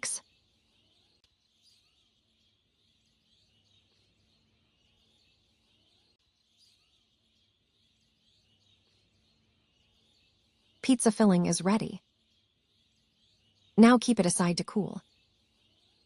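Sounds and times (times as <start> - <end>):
faint bird chirps: 0.0 - 16.0.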